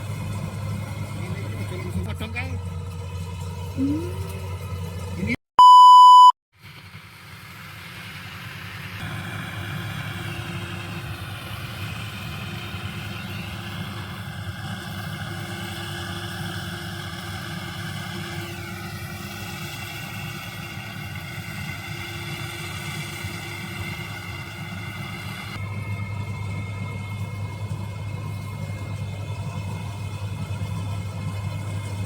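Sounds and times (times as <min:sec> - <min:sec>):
combine harvester engine drone: 0:00.0 - 0:05.4, 0:06.6 - 0:32.0
high machinery whine: 0:06.8 - 0:32.0.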